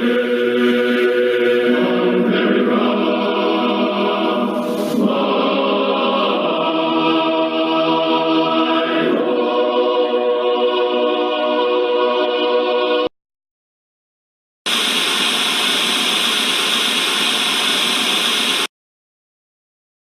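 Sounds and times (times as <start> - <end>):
choir singing an anthem: 0.0 - 13.1.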